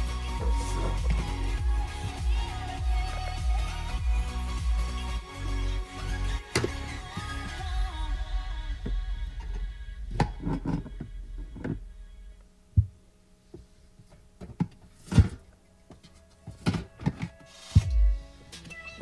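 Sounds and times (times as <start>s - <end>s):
background music: 0.0s - 12.6s, 15.0s - 19.0s
cans and bottles knocking on plastic: 14.0s - 17.9s.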